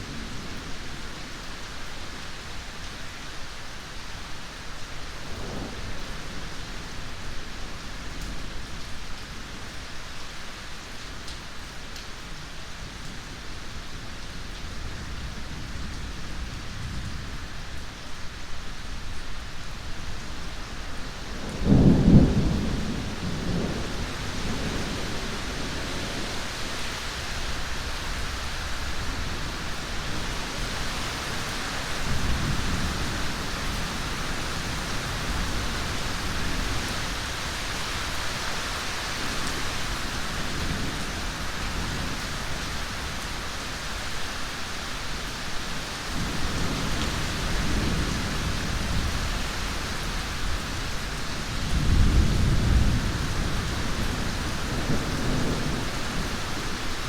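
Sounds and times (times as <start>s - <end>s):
heavy rain: 0.0s - 57.0s
thunder rumbling: 21.4s - 26.7s, 46.2s - 56.8s.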